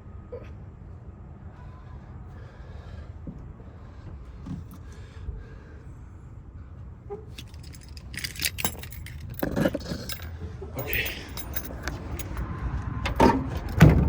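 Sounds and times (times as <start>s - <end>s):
keys jangling and clicking: 7.3s - 14.0s.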